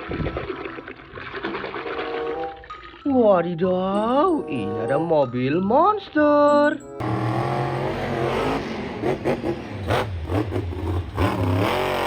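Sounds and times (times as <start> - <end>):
car engine revving: 7.0 - 12.0.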